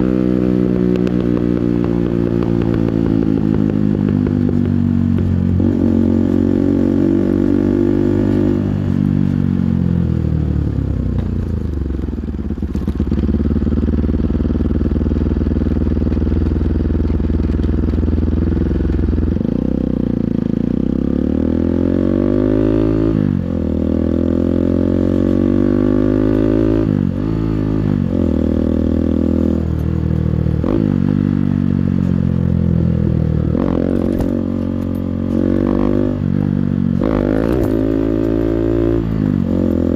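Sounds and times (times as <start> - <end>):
engine revving: 0.0 - 9.1, 19.4 - 29.9, 33.4 - 39.9.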